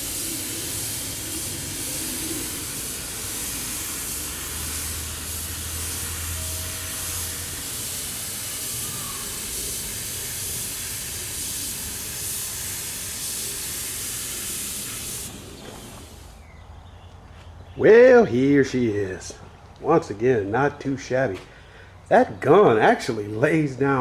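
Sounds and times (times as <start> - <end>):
spray gun hissing: 0.0 - 16.5.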